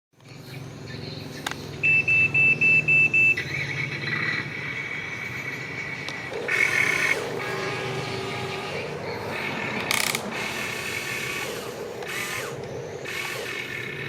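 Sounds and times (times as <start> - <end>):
loud mechanical whir: 0.2 - 14.0
short high beeps: 1.8 - 3.4
model excavator motor whine: 1.8 - 14.0.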